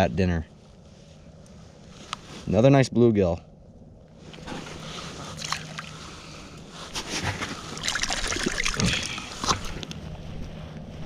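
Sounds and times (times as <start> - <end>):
water sloshing and trickling: 4.1 - 10.0.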